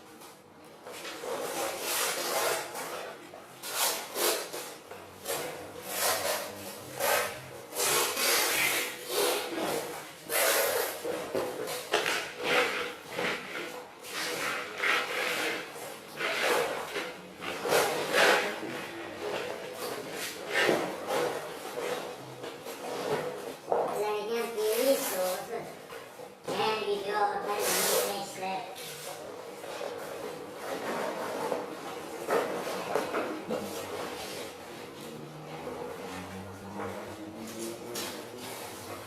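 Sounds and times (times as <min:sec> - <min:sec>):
hand tool scraping a surface: 0:01.0 - 0:23.6.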